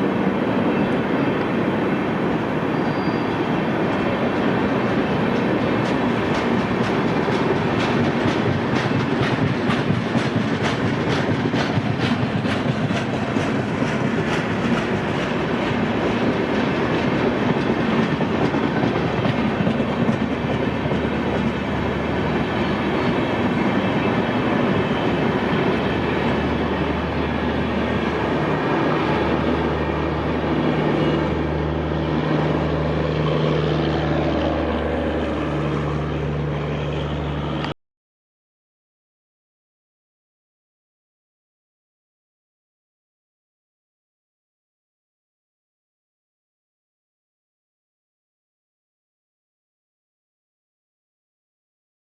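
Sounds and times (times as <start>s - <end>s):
train wheels clattering over rails: 3.9s - 34.0s.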